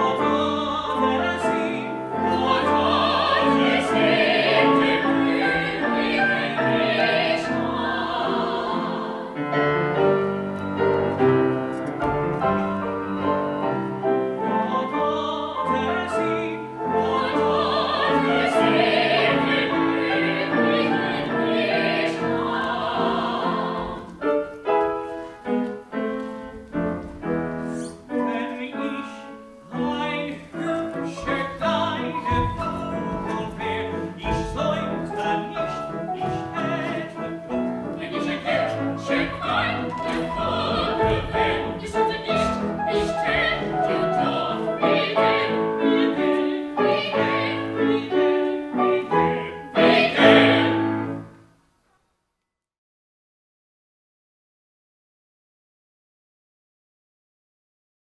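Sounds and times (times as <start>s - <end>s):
operatic singing: 0.0s - 10.3s, 14.4s - 24.3s, 27.6s - 51.2s
piano accompaniment: 0.0s - 51.5s.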